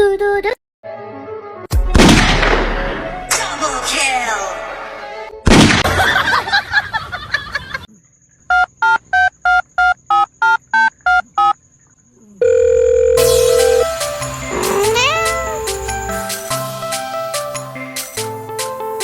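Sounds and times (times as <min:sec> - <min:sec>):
steady telephone tone: 0:12.4 - 0:13.8
background music: 0:13.2 - 0:19.0.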